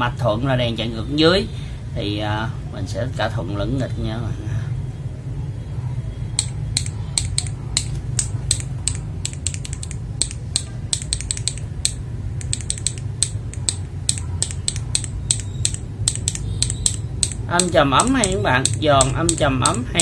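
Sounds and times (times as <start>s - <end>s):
steady low hum: 4.2s - 20.0s
mechanical keyboard key clacks: 6.4s - 20.0s.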